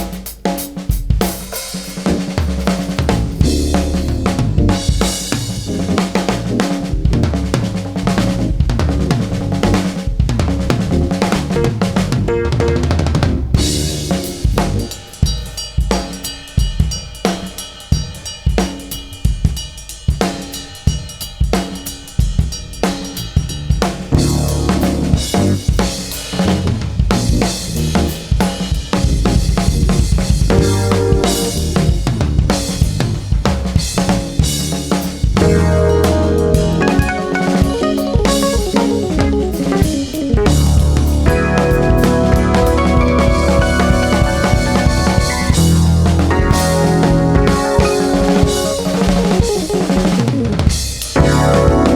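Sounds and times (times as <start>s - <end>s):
drum kit playing: 0.0s - 51.9s
jazz fusion band playing: 1.2s - 15.2s, 23.9s - 51.9s
bass guitar: 2.1s - 15.0s, 24.2s - 28.4s, 29.0s - 51.9s.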